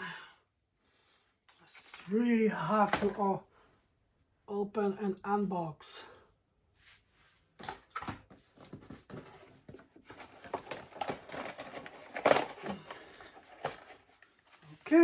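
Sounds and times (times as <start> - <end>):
packaging crinkling and rustling: 7.6 - 14.7.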